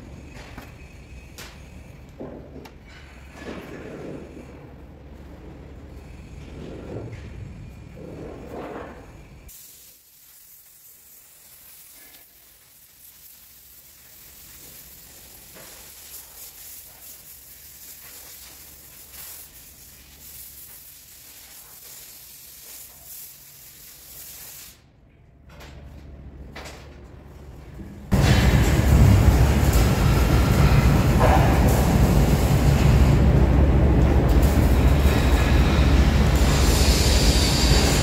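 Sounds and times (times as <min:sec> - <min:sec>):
welding arc sizzling: 0:09.1 - 0:24.8, 0:28.1 - 0:38.0.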